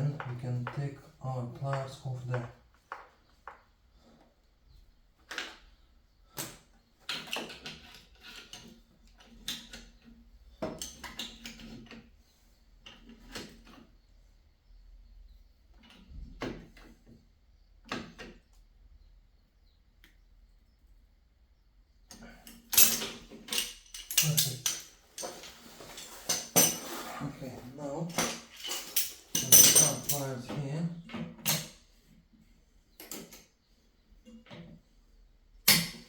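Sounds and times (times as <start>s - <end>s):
metal tools clinking and scraping: 22.2s - 30.7s
tools clattering: 22.5s - 30.6s.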